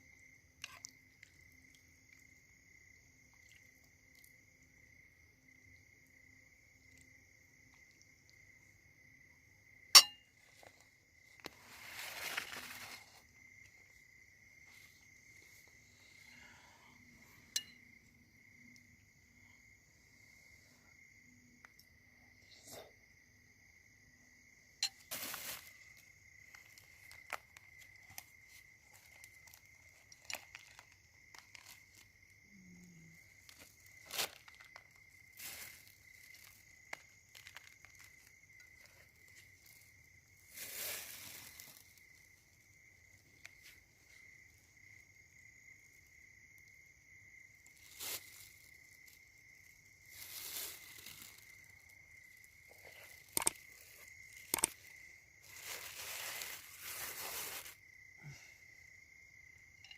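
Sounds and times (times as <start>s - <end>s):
insects chirring: 0.0s - 59.9s
rustling crinkling noises: 10.5s - 14.0s, 25.0s - 32.2s, 33.2s - 42.5s, 47.7s - 57.8s.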